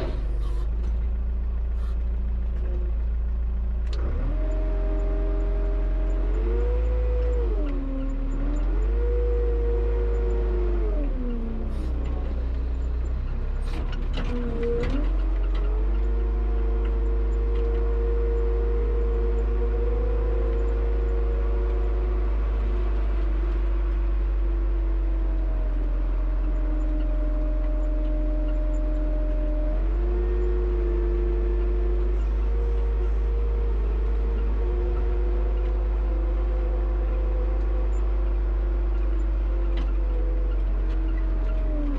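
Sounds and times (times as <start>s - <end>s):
tractor engine running: 0.0s - 41.9s.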